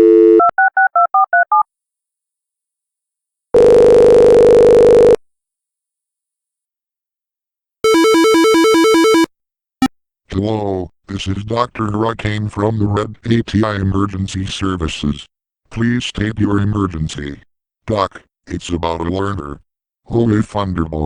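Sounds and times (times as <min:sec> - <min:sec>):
telephone dial tone: 0:03.6 - 0:05.2, 0:07.9 - 0:09.3
telephone ringing tone: 0:03.6 - 0:05.2, 0:07.8 - 0:09.3
touch-tone keypad beeps: 0:07.9 - 0:09.3.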